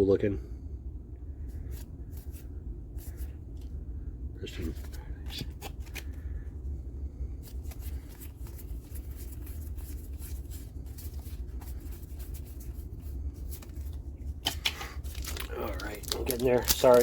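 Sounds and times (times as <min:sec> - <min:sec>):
steady low hum: 0:00.0 - 0:17.0
trading cards rustling: 0:04.4 - 0:06.5, 0:07.4 - 0:17.0.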